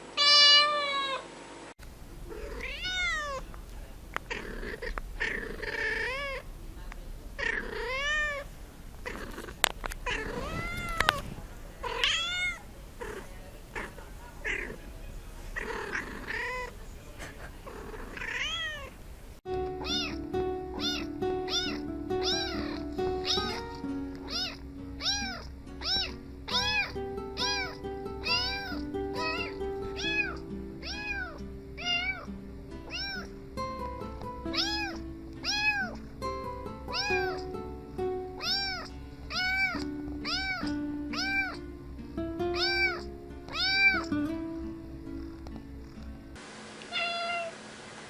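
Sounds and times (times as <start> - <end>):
cat meowing: 0.2 - 1.2, 2.3 - 3.5, 4.3 - 6.4, 7.4 - 11.2, 11.8 - 14.8, 15.6 - 16.7, 17.7 - 19.0, 19.8 - 20.2, 20.8 - 32.3, 32.9 - 33.3, 34.5 - 36.0, 36.9 - 37.5, 38.4 - 41.6, 42.5 - 44.1, 46.9 - 47.5
background music: 19.5 - 46.4.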